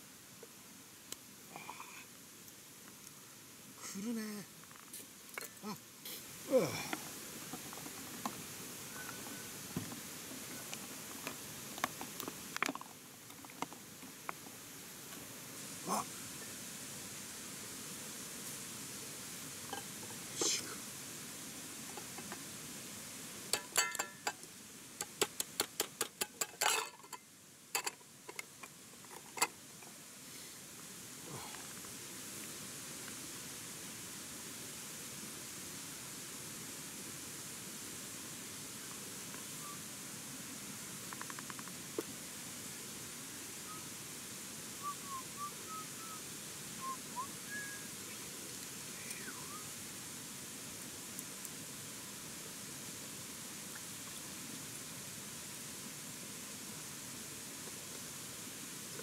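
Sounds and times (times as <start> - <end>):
steady hiss: 0.0 - 59.0
soft whistled chirps: 8.9 - 9.6, 39.5 - 39.9, 43.6 - 43.9, 44.8 - 49.8.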